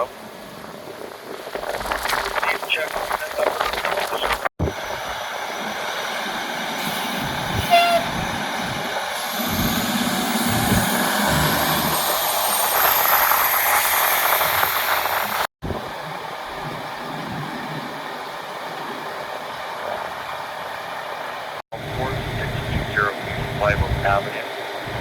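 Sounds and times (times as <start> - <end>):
steady rushing noise: 0.2 - 25.0
heavy vehicle engine running: 4.6 - 18.6, 21.8 - 25.0
short horn-like tone: 6.8 - 8.3.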